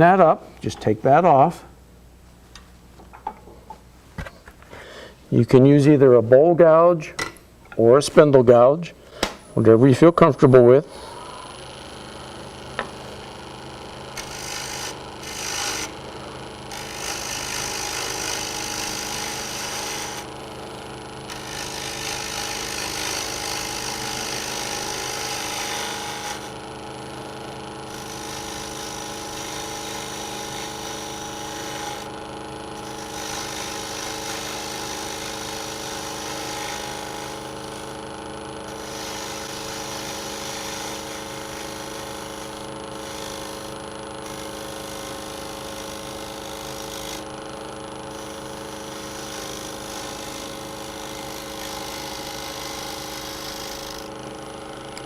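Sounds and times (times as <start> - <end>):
wood lathe humming: 10.6 - 55.0
gouge cutting wood: 12.8 - 27.1, 27.8 - 47.4, 48.1 - 54.2.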